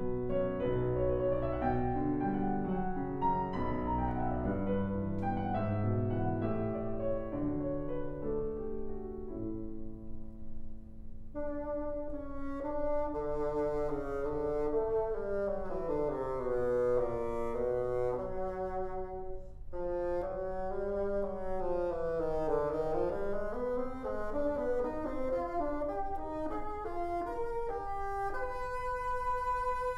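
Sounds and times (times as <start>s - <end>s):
piano accompaniment: 0.0s - 29.9s
bassoon melody: 11.4s - 29.9s.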